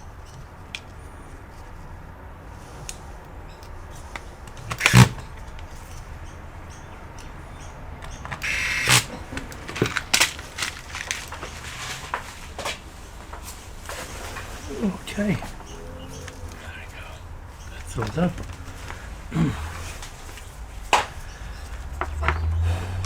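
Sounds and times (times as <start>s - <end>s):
clicks of laptop parts and tools: 8.0s - 11.6s
brief buzz: 8.4s - 9.1s.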